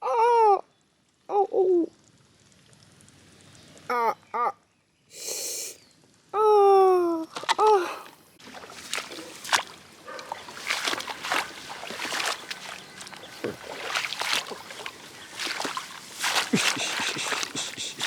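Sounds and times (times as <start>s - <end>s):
shallow water sloshing: 8.1s - 18.0s.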